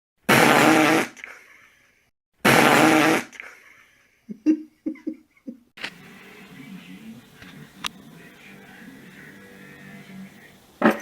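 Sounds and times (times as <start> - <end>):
loud raspy fart: 0.3 - 1.2, 2.4 - 3.4
short quiet fart puffs: 0.3 - 1.2, 2.4 - 3.4.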